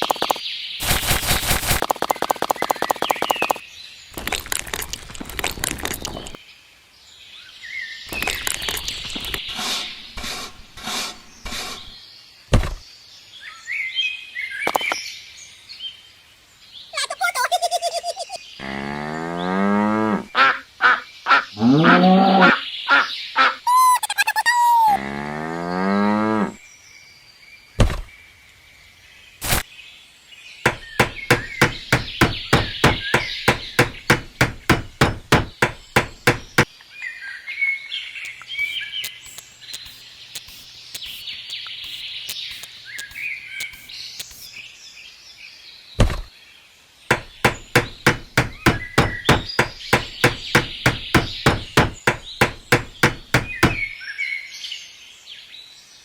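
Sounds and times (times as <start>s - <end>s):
cow mooing: 21.6s - 22.6s, 25.0s - 26.6s
quick even knocks: 30.7s - 36.7s, 47.1s - 53.9s
faint bird chirping: 35.4s - 56.0s.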